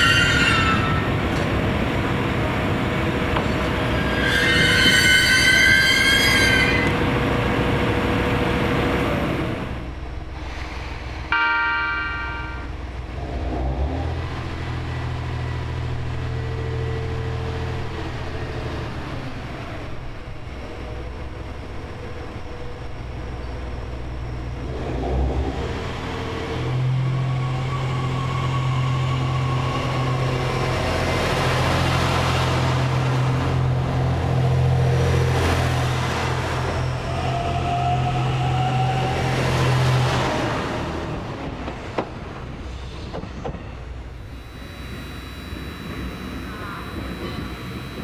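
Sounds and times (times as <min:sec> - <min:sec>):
diesel engine drone: 0:00.0 - 0:04.7, 0:05.6 - 0:48.0
rising whine: 0:44.2 - 0:48.0.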